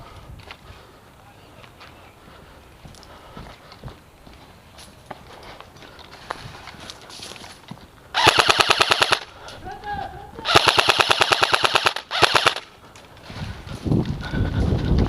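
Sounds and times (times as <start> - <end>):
airsoft gun firing full auto: 8.2 - 9.3, 10.5 - 12.7.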